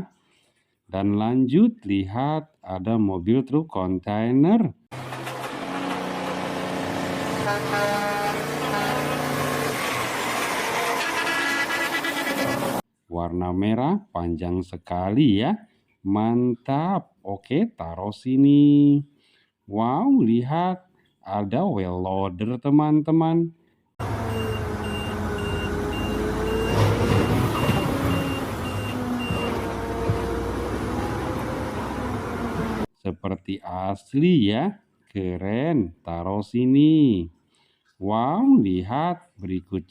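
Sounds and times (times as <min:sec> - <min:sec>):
vehicle engine running: 0:04.9 - 0:10.4
truck engine running: 0:04.9 - 0:12.8, 0:24.0 - 0:32.9
truck horn toots: 0:07.2 - 0:12.8
reversing alarm beeping: 0:24.3 - 0:29.7.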